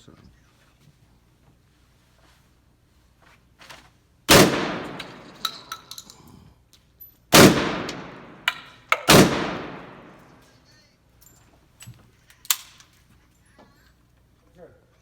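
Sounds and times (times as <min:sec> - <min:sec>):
shotgun shots echoing: 0:04.3 - 0:05.7, 0:07.3 - 0:10.4
sharp metallic clinks: 0:04.8 - 0:06.3.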